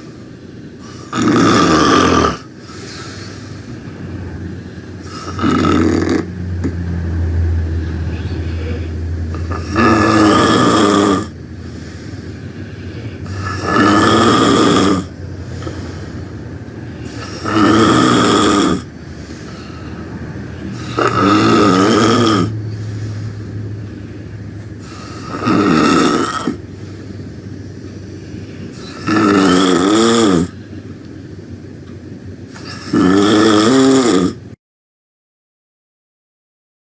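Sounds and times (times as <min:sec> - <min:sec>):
loud snoring: 0:00.8 - 0:02.5, 0:05.0 - 0:06.4, 0:09.3 - 0:11.4, 0:13.2 - 0:16.0, 0:17.0 - 0:18.9, 0:20.7 - 0:23.0, 0:24.8 - 0:26.6, 0:28.8 - 0:30.6, 0:32.6 - 0:34.6.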